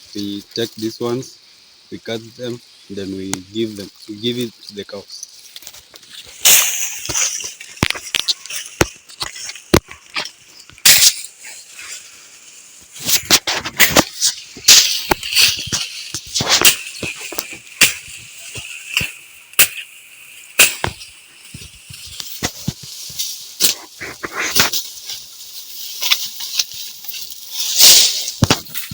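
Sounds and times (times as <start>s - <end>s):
dry leaves rustling: 2.4s - 28.9s
machete chopping stalks: 6.3s - 11.3s, 13.0s - 25.3s, 26.0s - 28.9s.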